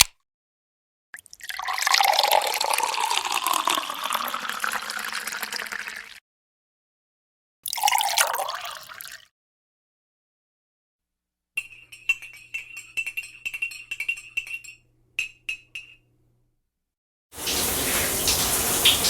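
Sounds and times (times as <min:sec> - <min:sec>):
water pouring: 0:01.2 - 0:06.2, 0:07.7 - 0:09.3, 0:17.4 - 0:19.0.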